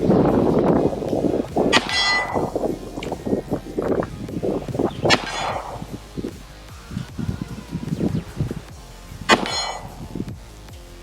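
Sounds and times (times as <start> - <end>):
bullet striking steel plate: 1.5 - 3.3, 4.0 - 6.4, 9.3 - 10.3.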